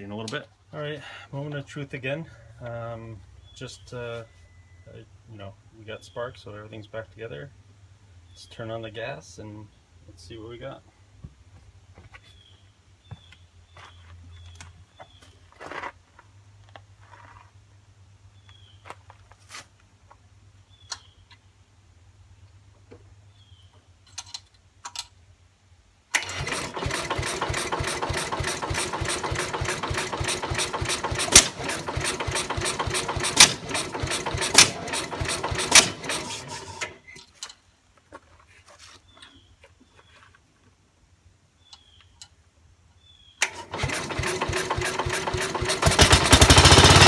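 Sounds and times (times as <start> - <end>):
small engine running with pops: 26.2 - 37.0, 43.8 - 47.0
small engine cranking: 26.2 - 37.1, 43.4 - 47.0.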